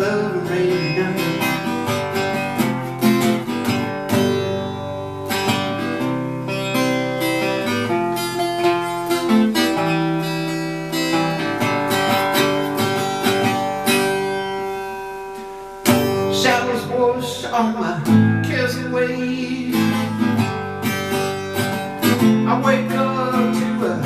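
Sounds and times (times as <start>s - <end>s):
acoustic guitar strumming: 0.0s - 24.0s.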